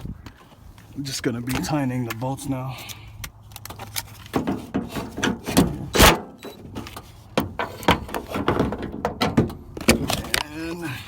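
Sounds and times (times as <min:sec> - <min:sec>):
metal clicks and knocks in car door: 0:04.3 - 0:10.4.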